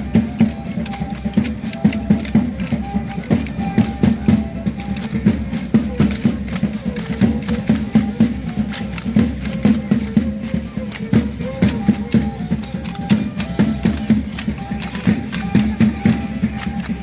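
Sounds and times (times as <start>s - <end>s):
drum beating fast rhythm: 0.0s - 17.0s
violin melody: 0.0s - 17.0s
sharp clicks: 10.7s - 17.0s.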